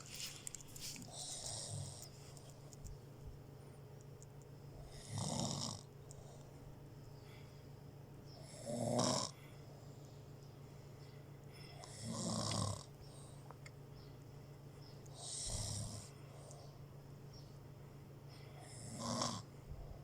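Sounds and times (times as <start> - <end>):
steady low hum: 0.0 - 20.0
person snoring: 4.9 - 5.9, 8.4 - 9.4, 11.8 - 12.9, 15.2 - 16.1, 18.6 - 19.5.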